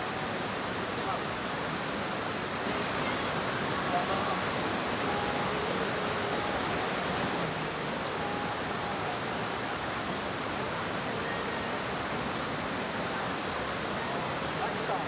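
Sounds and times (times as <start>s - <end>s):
mountain stream rushing: 0.0s - 15.0s.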